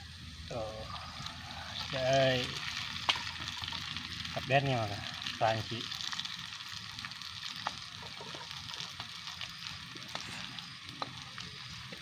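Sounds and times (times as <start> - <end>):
batter frying in hot oil: 0.0 - 12.0.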